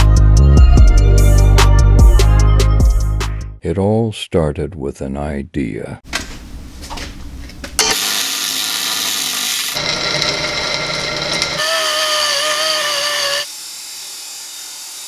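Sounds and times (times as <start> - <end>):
power tools running: 7.8 - 15.0
tool motor whining: 7.8 - 15.0.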